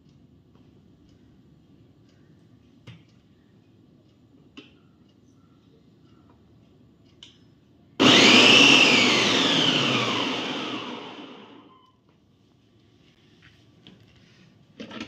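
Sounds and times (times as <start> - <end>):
mixer motor whine spinning down: 8.0 - 11.7.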